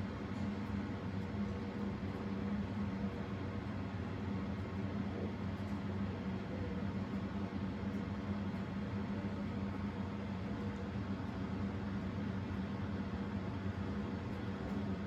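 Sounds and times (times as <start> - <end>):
ceiling fan running: 0.0 - 15.0.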